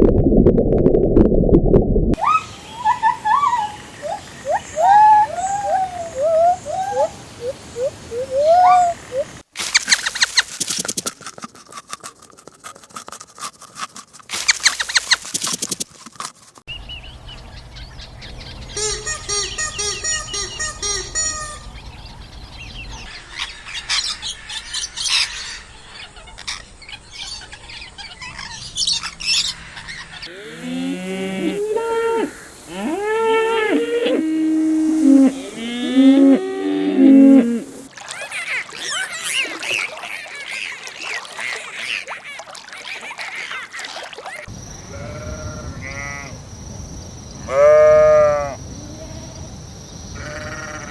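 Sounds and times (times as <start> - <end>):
bird-like pitched calls: 2.2 - 11.2, 14.3 - 15.9, 16.7 - 25.6
animal clicking and chirping calls: 9.6 - 16.2, 38.0 - 44.5.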